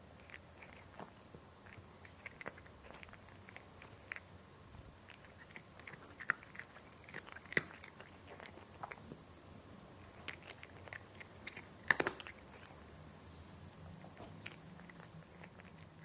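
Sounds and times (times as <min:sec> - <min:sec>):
cat crunching dry food: 0:00.2 - 0:04.3, 0:05.1 - 0:09.1, 0:10.0 - 0:12.8, 0:14.4 - 0:16.0.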